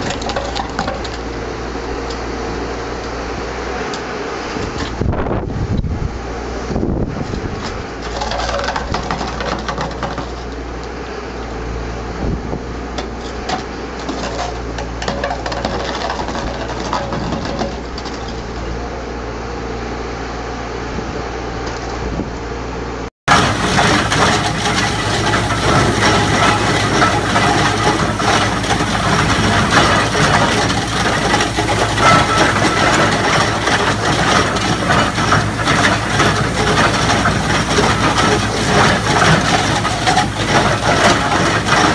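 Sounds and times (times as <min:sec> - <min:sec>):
low engine hum: 0:00.0 - 0:41.9
machine clattering: 0:23.3 - 0:41.9.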